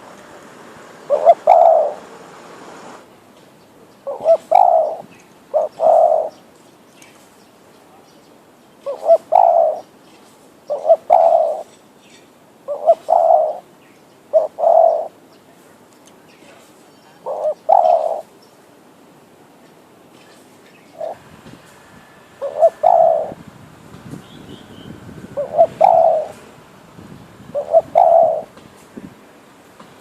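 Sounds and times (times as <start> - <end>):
dove cooing: 1.0 - 2.2, 4.0 - 6.4, 8.8 - 9.9, 10.7 - 11.7, 12.7 - 13.7, 14.3 - 15.2, 17.2 - 18.3, 20.9 - 21.3, 22.4 - 23.5, 24.4 - 26.6, 27.5 - 28.6.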